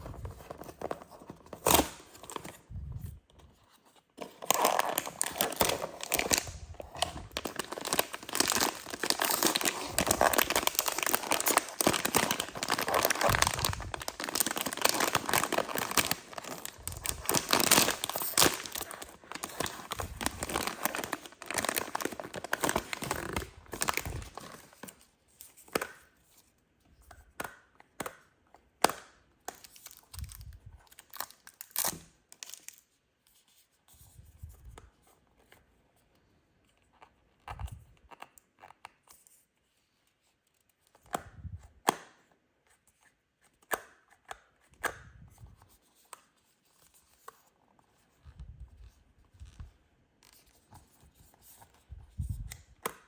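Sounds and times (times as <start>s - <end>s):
packaging tearing and crinkling: 0.0s - 2.6s, 4.2s - 24.9s, 29.6s - 32.8s.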